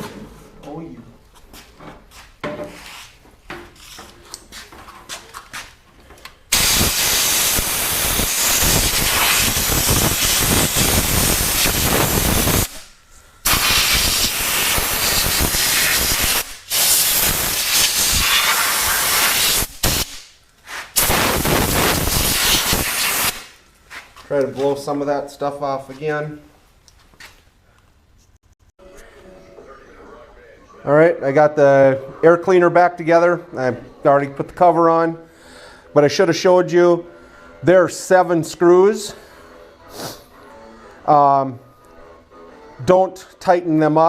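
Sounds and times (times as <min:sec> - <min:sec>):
compressed air hissing: 0:06.5 - 0:23.6.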